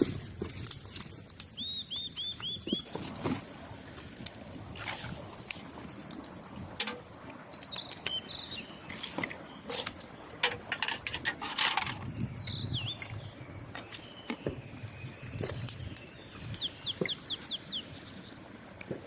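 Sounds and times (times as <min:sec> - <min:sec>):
birds chirping: 0:01.3 - 0:04.0, 0:04.7 - 0:18.7.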